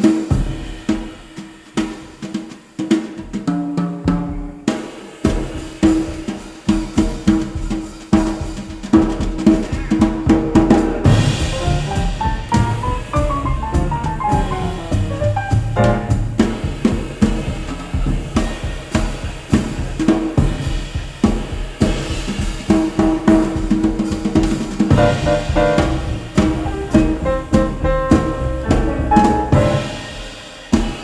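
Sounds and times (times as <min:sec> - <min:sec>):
drum kit steady beat: 0:00.0 - 0:31.0
falling melodic notes: 0:11.4 - 0:16.3.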